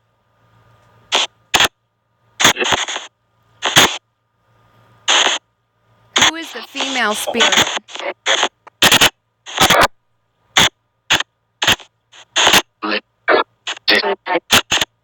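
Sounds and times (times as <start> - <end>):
chopped bursts of hiss: 1.1 - 1.8, 2.4 - 4.0, 5.0 - 5.4, 6.2 - 9.9, 10.5 - 12.7, 13.7 - 14.9.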